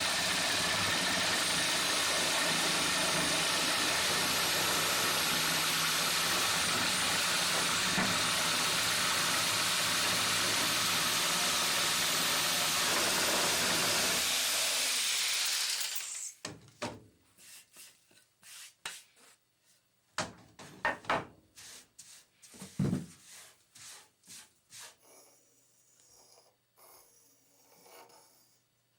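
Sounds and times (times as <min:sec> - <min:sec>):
woodworking lathe cutting wood: 0:00.0 - 0:16.2.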